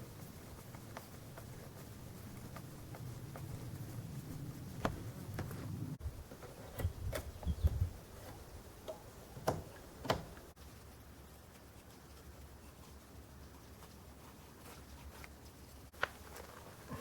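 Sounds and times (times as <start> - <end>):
dull thumps: 4.8 - 10.6.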